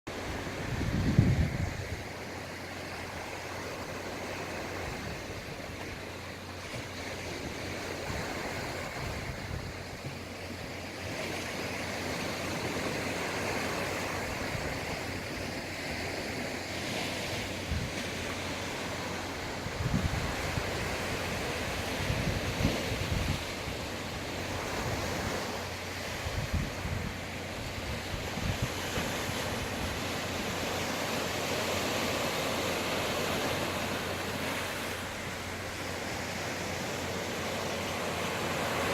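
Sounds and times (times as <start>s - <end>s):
wind gusting on microphone: 0.1s - 6.0s, 6.9s - 31.4s
sea waves washing ashore: 0.1s - 38.9s.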